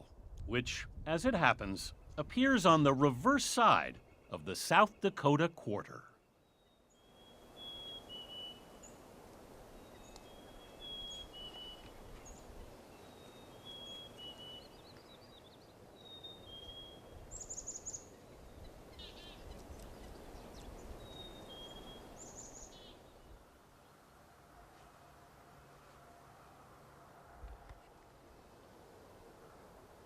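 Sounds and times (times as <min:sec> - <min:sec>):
songbirds singing: 0:00.0 - 0:24.0
outdoor hiss: 0:00.4 - 0:06.0, 0:07.2 - 0:15.1, 0:15.8 - 0:23.8
high bird trills: 0:06.9 - 0:09.0
bird whistling descending notes: 0:07.2 - 0:08.7.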